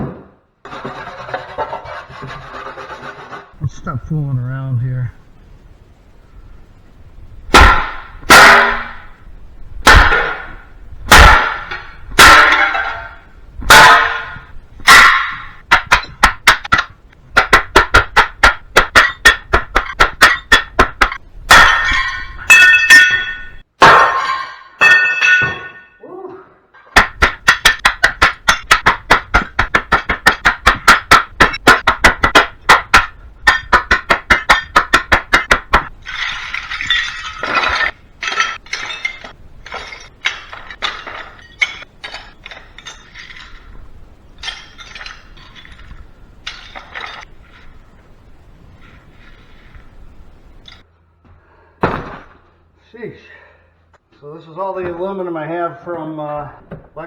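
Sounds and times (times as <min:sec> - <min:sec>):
metal scrap clinking: 0:09.9 - 0:26.0, 0:26.8 - 0:47.9.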